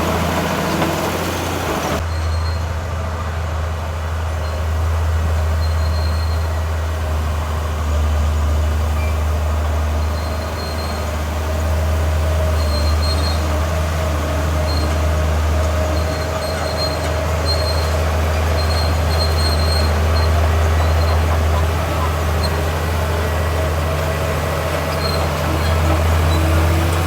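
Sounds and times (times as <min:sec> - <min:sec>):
diesel engine droning: 0:00.0 - 0:27.0
faint high squeaks: 0:15.9 - 0:22.8.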